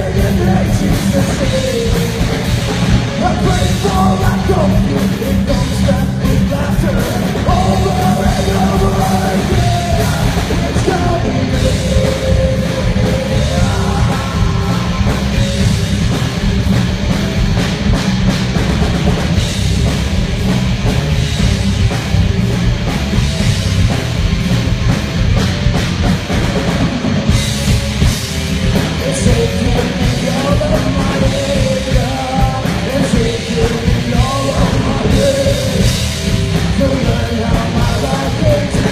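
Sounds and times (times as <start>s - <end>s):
person singing: 0.0s - 15.4s, 29.0s - 36.0s
heavy rock band playing: 0.0s - 38.9s.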